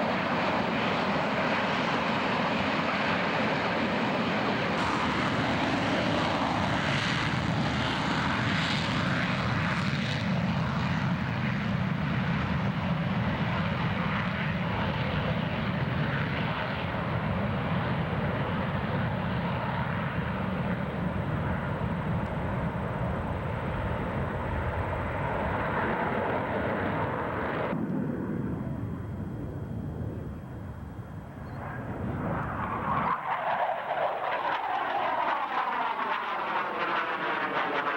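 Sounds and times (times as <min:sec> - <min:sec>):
loud airplane engine: 0:00.0 - 0:37.9.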